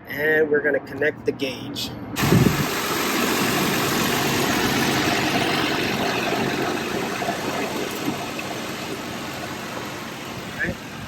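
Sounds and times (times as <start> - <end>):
air conditioning rushing: 1.0 - 11.0
car engine idling: 2.2 - 11.0.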